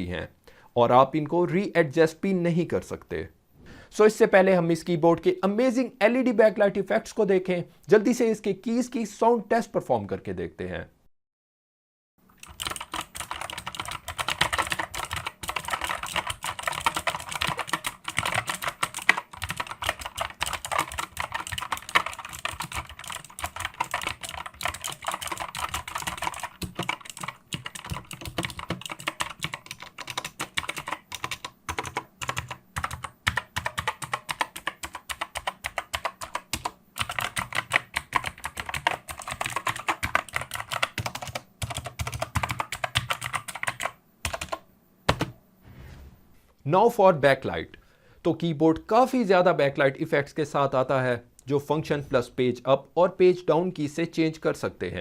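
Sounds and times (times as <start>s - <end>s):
clicky mechanical keyboard typing: 12.4s - 45.3s.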